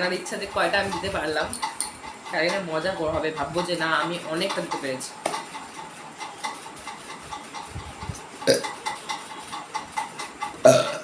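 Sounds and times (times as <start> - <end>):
woman burping: 8.5 - 8.7, 10.6 - 11.0.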